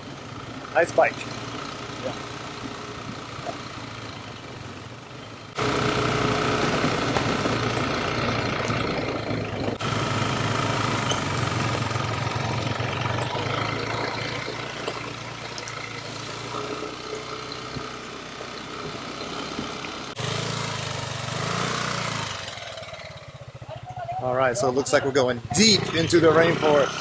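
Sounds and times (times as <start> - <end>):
motorbike engine running: 0.0 - 27.0.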